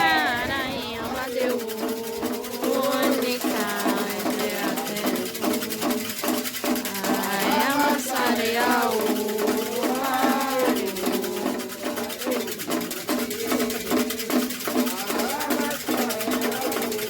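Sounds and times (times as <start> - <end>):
steady drum beat: 0.0 - 17.0
voices singing a chant: 0.0 - 17.0.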